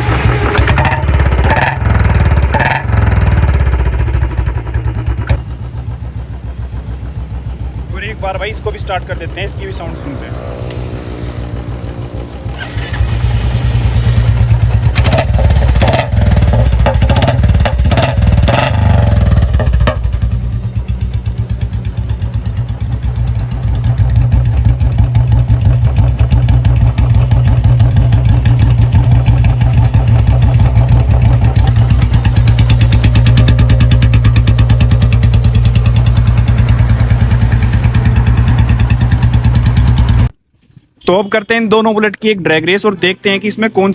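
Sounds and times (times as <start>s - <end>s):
motorcycle engine revving and idling: 0.0s - 40.4s.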